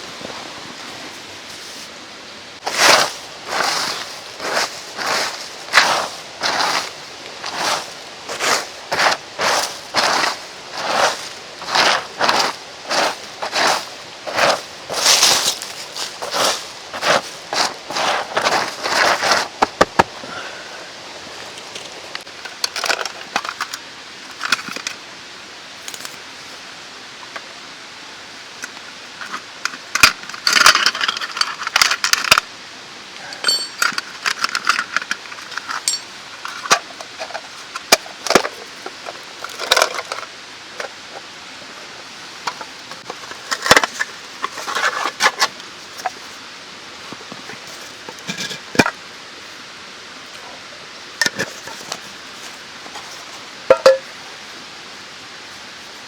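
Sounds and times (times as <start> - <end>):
mountain stream rushing: 0.0 - 29.6
camp gear clinking and clattering: 2.6 - 20.2, 29.2 - 32.4, 33.2 - 41.3, 42.4 - 46.3, 51.2 - 54.3.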